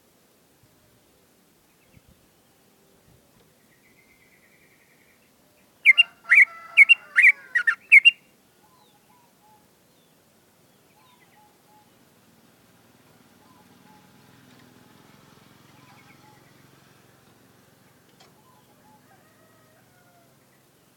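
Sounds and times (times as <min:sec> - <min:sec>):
bird singing whistled notes: 0:05.8 - 0:09.7.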